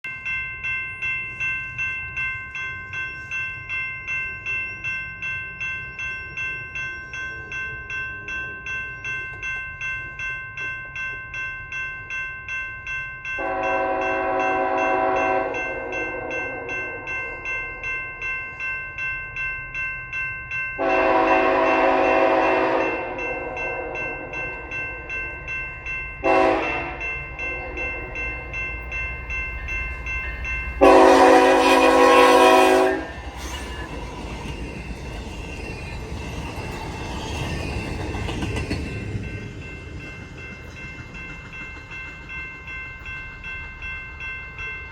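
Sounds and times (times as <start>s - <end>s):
crossing bell ringing: 0.0s - 44.9s
locomotive horn blasts: 13.4s - 16.8s, 20.8s - 24.2s, 26.2s - 27.9s, 30.8s - 33.2s.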